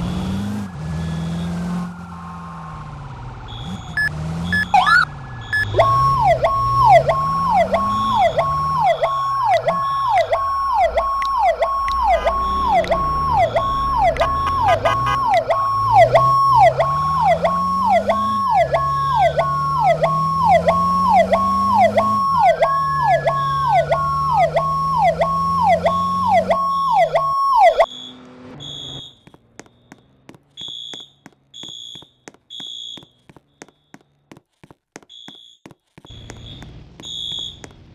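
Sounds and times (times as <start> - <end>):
low rising siren sweeps: 0.0 - 28.0
wailing siren: 0.0 - 28.0
siren yelping: 0.0 - 33.3, 36.1 - 37.7
faint fire alarm beeping: 35.1 - 37.7.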